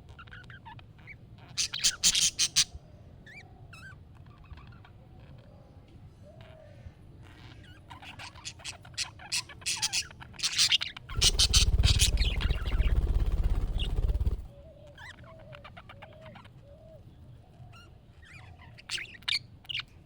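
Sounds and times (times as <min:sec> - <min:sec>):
budgerigars chirping: 0:09.7 - 0:14.5
soft warbling: 0:11.1 - 0:14.5
loud low rumbling: 0:11.2 - 0:14.5.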